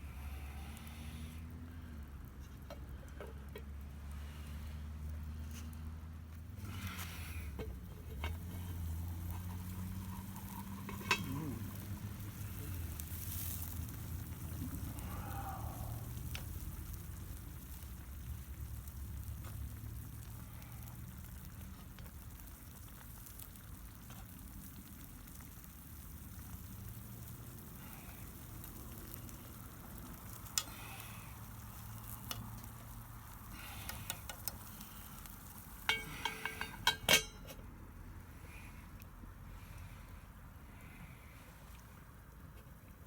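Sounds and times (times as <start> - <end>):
food sizzling in a pan: 6.8 - 37.0
metal utensil clinking on pan: 9.3 - 11.8, 35.8 - 37.6.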